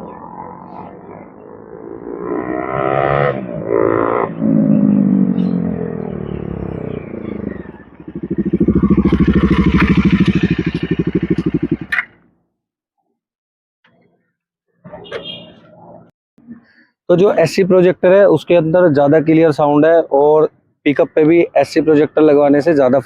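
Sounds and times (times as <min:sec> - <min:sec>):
motorcycle riding past: 0:00.0 - 0:12.0
pulsing exhaust note: 0:04.3 - 0:12.0.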